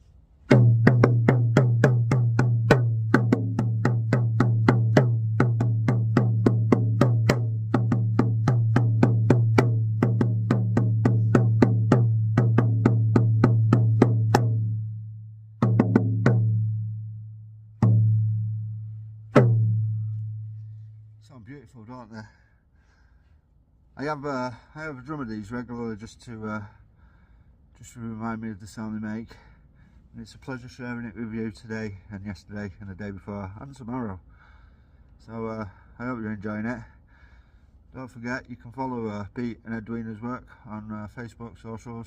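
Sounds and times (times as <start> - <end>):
frame drum booming: 0.5 - 17.2, 17.8 - 20.5.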